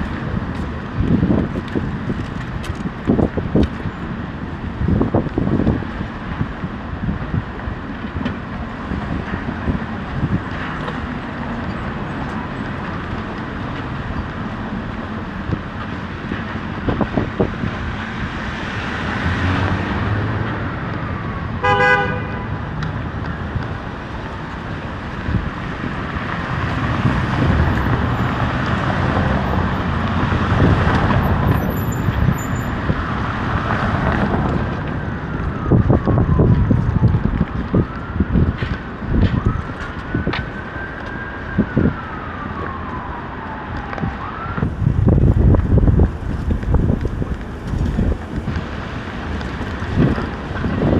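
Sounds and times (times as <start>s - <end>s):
vehicles passing: 0.0s - 50.9s
car horn toot: 21.6s - 22.5s.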